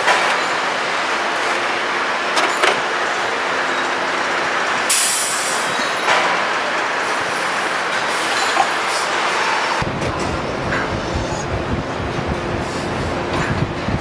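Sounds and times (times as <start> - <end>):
loud air hiss: 4.9 - 6.1, 7.0 - 13.9
machinery din: 7.8 - 14.0.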